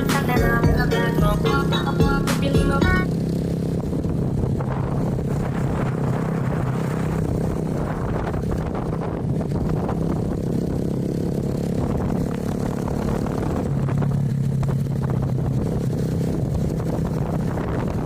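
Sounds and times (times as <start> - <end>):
small engine running: 0.0 - 18.0
wind on microphone: 3.6 - 18.0.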